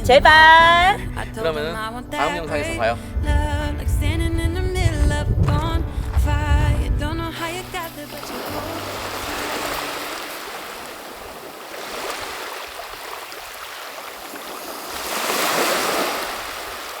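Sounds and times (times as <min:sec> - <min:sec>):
sea surf washing on beach: 0:07.4 - 0:17.0.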